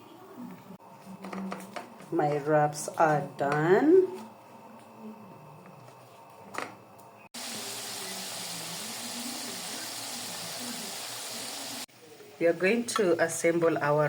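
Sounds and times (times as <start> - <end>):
food sizzling in a pan: 7.4 - 12.6.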